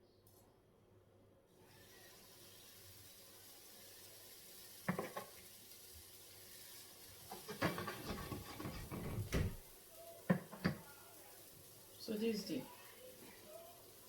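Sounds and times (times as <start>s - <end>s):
kitchenware knocking: 7.4s - 9.6s.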